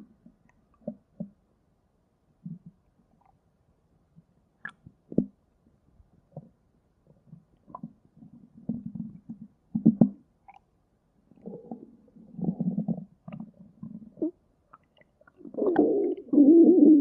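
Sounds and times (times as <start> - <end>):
stomach growling: 11.4 - 17.0.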